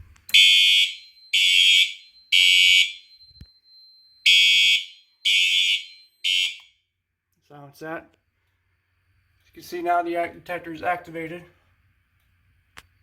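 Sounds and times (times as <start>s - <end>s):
alarm horn blasts: 4.2s - 6.7s.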